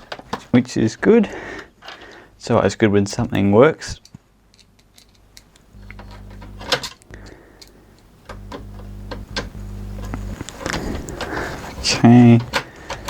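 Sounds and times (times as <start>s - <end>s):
small electric motor humming: 5.8s - 7.4s, 8.3s - 11.4s.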